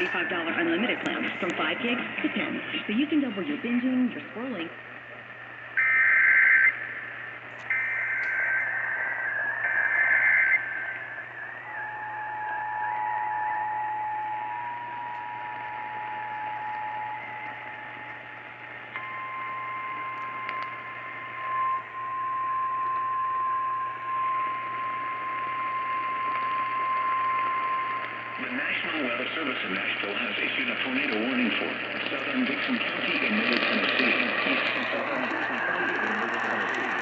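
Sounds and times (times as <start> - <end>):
radio hiss: 0.0 - 19.0, 24.3 - 37.0
warbling digital data bursts: 7.7 - 14.6.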